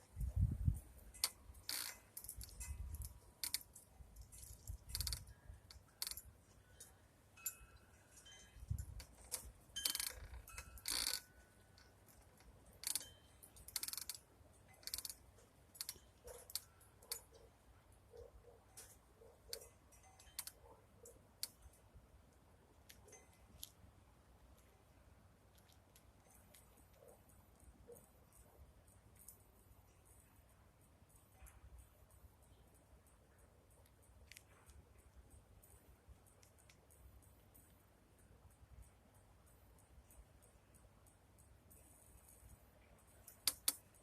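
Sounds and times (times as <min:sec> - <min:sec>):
wind rumbling on microphone: 0:00.0 - 0:01.0
sharp clicks: 0:43.1 - 0:44.0.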